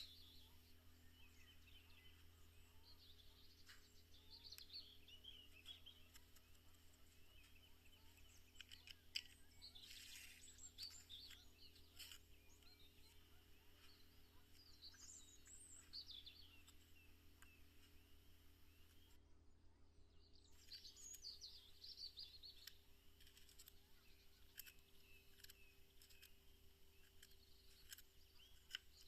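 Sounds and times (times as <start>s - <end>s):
faint birdsong: 0.0s - 29.0s
low steady hum: 0.0s - 29.0s
light clicks: 5.6s - 13.2s.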